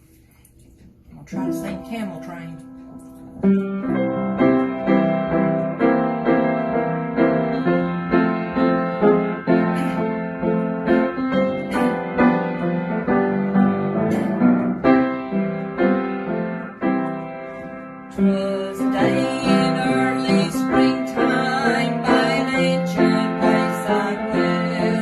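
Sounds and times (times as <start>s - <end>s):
piano chords and melody: 1.4s - 25.0s.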